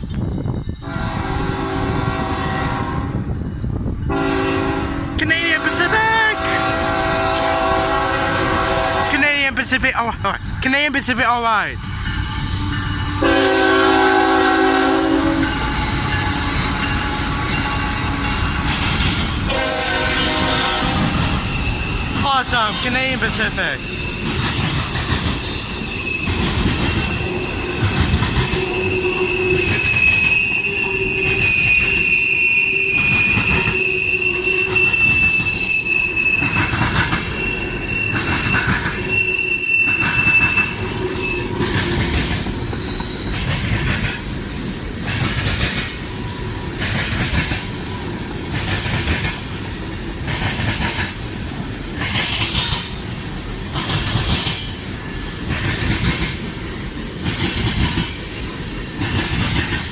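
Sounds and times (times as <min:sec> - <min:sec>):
train wheels squealing: 0:00.0 - 0:01.1, 0:11.7 - 0:13.8, 0:14.9 - 0:19.5, 0:21.1 - 0:44.0, 0:45.4 - 0:48.9.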